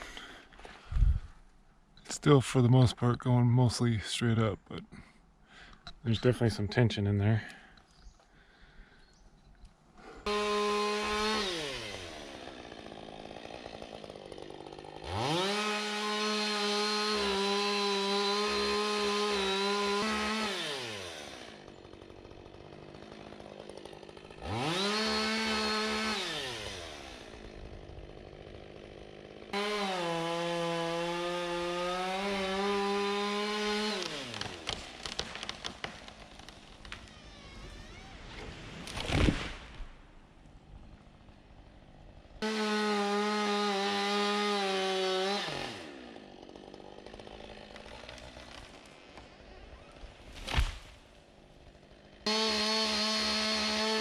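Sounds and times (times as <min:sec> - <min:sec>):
chainsaw cutting into tree: 0:10.0 - 0:39.9, 0:40.5 - 0:54.0
faint wood cracks: 0:33.9 - 0:39.9, 0:47.7 - 0:49.4, 0:50.0 - 0:51.0.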